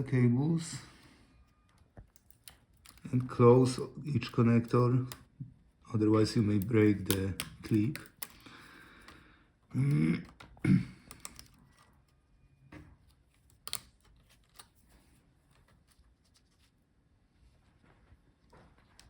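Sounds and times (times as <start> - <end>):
person muttering or clearing throat: 9.7 - 11.2.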